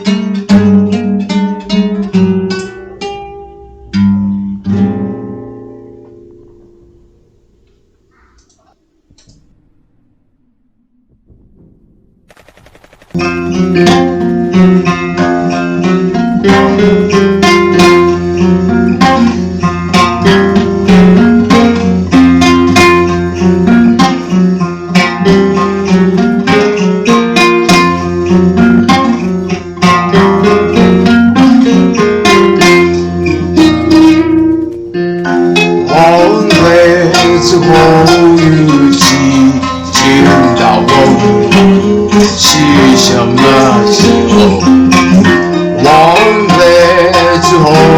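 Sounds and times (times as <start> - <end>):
plucked acoustic guitar: 0.0 - 10.2, 13.1 - 47.9
wavering gliding higher melody: 1.3 - 7.7
steady low drone: 1.5 - 14.4.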